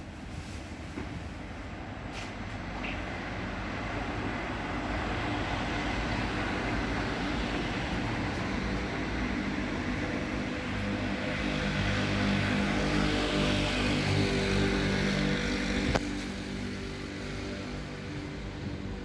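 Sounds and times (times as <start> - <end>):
passing vehicles rushing: 1.4 - 19.0.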